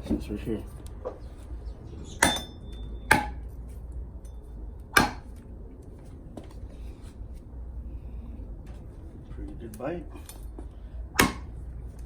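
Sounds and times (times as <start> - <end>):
machete chopping strikes: 2.2 - 3.5, 4.9 - 5.4, 11.1 - 11.6.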